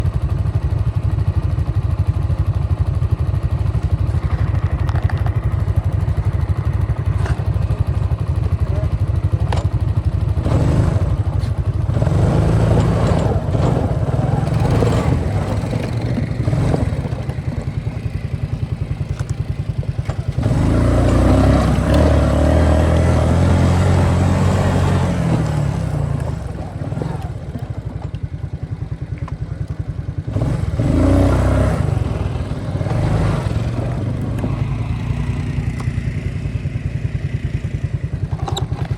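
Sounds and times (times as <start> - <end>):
vehicle engine revving: 10.3 - 28.2, 30.1 - 38.9.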